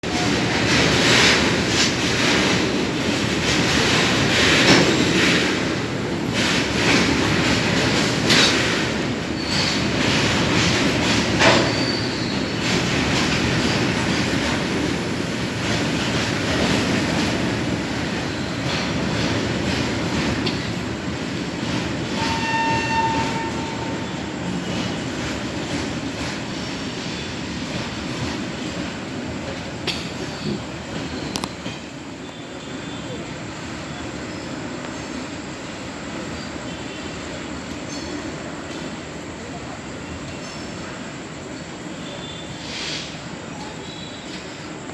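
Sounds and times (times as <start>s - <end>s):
freight train rumbling: 0.0s - 44.9s.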